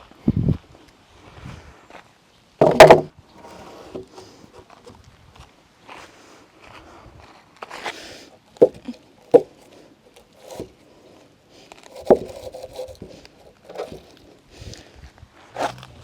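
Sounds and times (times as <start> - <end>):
hollow wooden knocks: 2.6 - 3.1, 8.6 - 9.6, 12.0 - 13.1
wooden boards scraping: 2.6 - 4.7, 10.2 - 10.8, 11.8 - 14.2, 15.6 - 15.9.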